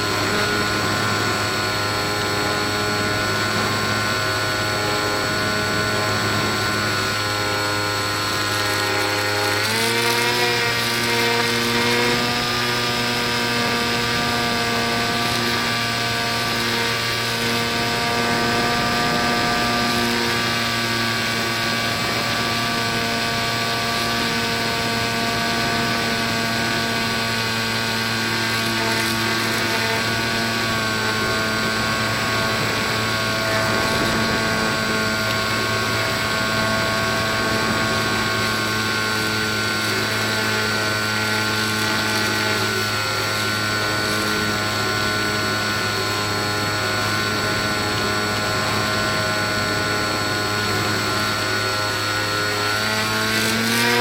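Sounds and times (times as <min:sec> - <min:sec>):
electric propeller motor whine: 0:00.0 - 0:54.0.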